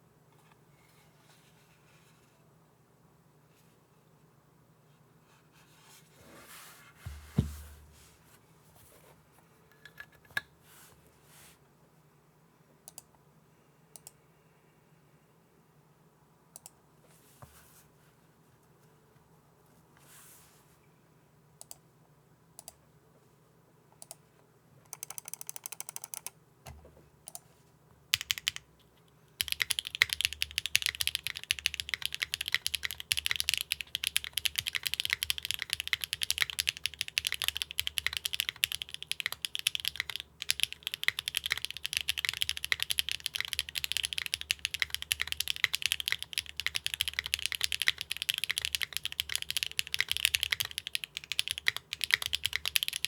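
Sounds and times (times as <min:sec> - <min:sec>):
mechanical keyboard typing: 0:24.9 - 0:26.4, 0:28.1 - 0:28.7, 0:29.4 - 0:53.0.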